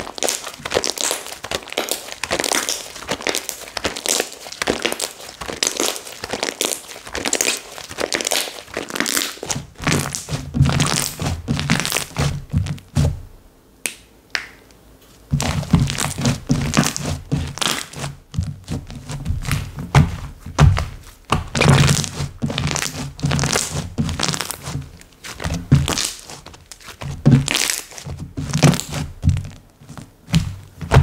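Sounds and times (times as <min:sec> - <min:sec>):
soft low thuds: 0:09.6 - 0:13.4, 0:18.2 - 0:27.5, 0:28.1 - 0:31.0.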